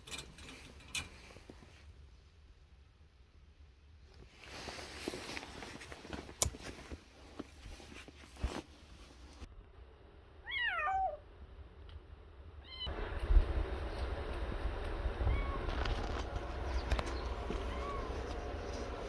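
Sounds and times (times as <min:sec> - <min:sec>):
cat meowing: 0:10.4 - 0:11.2, 0:15.2 - 0:16.0, 0:17.5 - 0:18.2.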